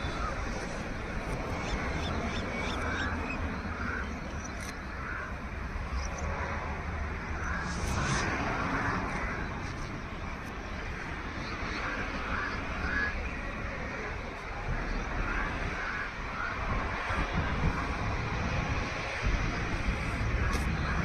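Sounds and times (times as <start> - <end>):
outdoor background noise: 0.0 - 21.0
low rumble: 5.8 - 10.4.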